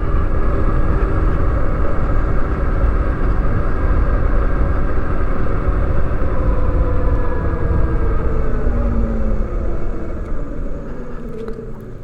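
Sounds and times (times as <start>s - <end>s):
low road rumble: 0.0s - 12.0s
wind noise: 0.0s - 12.0s
electric motor whining: 3.8s - 12.0s.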